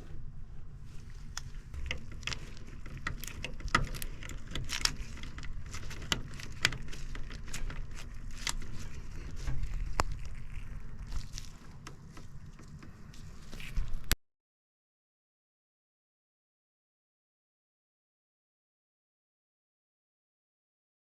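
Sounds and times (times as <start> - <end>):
steady low rumble: 0.0 - 14.2.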